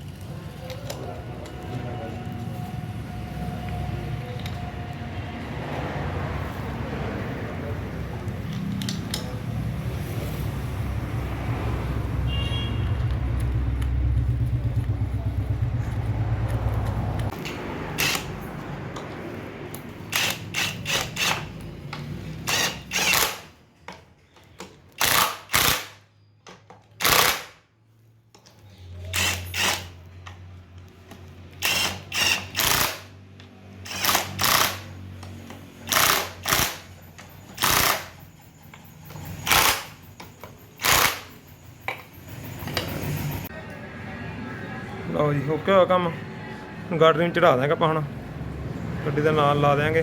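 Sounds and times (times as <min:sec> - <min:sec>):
power tool bursts: 0:18.0 - 0:18.3, 0:20.1 - 0:21.4, 0:22.4 - 0:23.5, 0:25.0 - 0:26.0, 0:27.0 - 0:27.6, 0:29.1 - 0:30.0, 0:31.6 - 0:33.1, 0:33.8 - 0:34.9, 0:37.5 - 0:38.1, 0:40.8 - 0:41.4.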